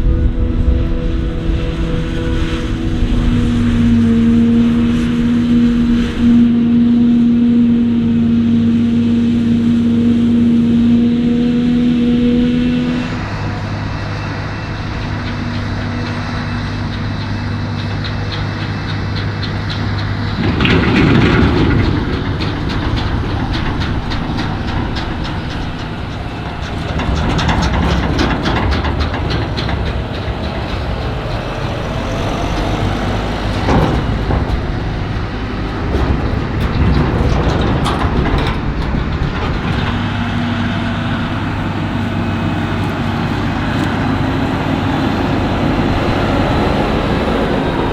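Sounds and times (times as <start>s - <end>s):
heavy machinery engines droning: 0.0s - 47.9s
machinery rattling clatters: 13.2s - 47.9s.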